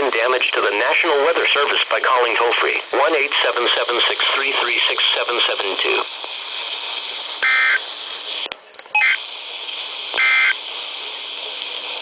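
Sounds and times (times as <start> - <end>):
radio broadcast hiss: 0.0 - 12.0
short electronic tone bursts: 7.4 - 7.8, 10.2 - 10.6.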